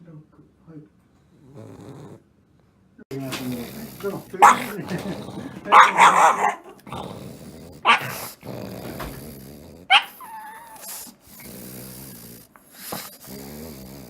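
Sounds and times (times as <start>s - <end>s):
dog snoring: 1.2s - 14.0s
dog snorting breaths: 3.2s - 14.0s.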